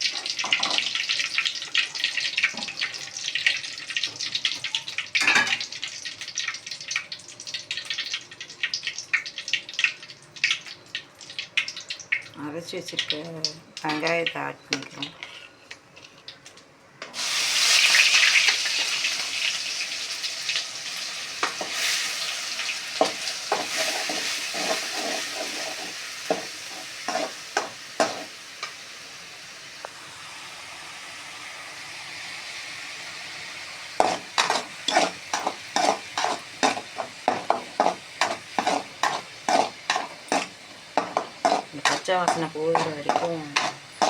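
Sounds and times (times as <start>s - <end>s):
onion paste sizzling in oil: 0.0s - 16.4s, 17.1s - 44.0s
spoon scraping pan: 14.8s - 16.2s, 23.0s - 28.4s, 34.0s - 44.0s.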